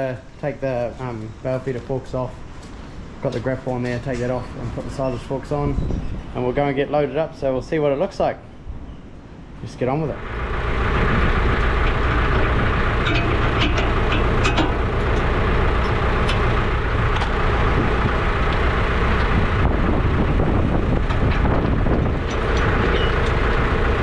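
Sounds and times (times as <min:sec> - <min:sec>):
tractor engine running: 0:10.2 - 0:24.0
metallic clicks and clanks: 0:11.6 - 0:17.4, 0:21.0 - 0:24.0.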